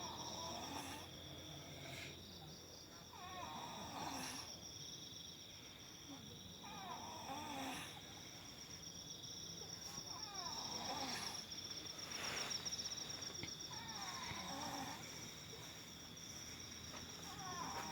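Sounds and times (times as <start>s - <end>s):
rasping snores: 0.0s - 2.2s, 3.3s - 4.5s, 6.7s - 8.0s, 10.4s - 11.5s, 14.2s - 15.2s
crickets trilling: 0.0s - 17.9s.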